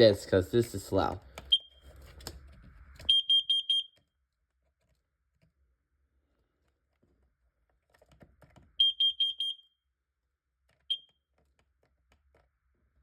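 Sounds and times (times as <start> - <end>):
alarm high-pitched beeps: 3.1 - 4.0, 8.8 - 9.6.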